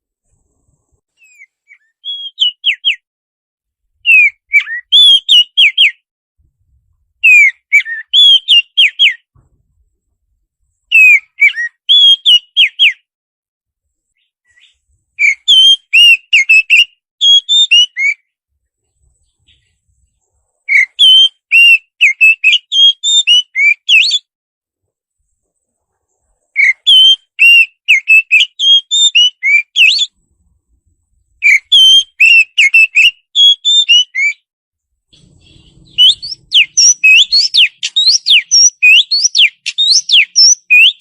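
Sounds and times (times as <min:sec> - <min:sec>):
songbird whistling song: 0:01.1 - 0:03.0, 0:04.0 - 0:06.0, 0:07.2 - 0:09.5, 0:10.8 - 0:13.1, 0:14.1 - 0:18.3, 0:19.0 - 0:24.3, 0:26.2 - 0:30.4, 0:31.3 - 0:34.5, 0:35.2 - 0:41.0.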